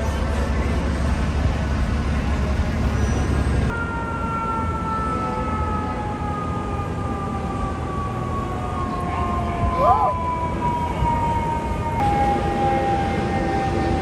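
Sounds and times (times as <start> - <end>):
street traffic rumble: 0.0 - 14.0
fire truck siren winding down: 3.5 - 14.0.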